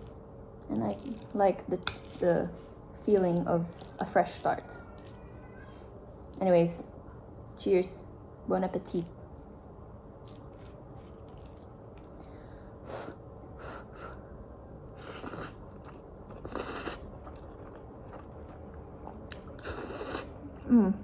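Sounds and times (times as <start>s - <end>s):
mouth noises of eating: 10.2s - 14.2s, 14.9s - 21.0s.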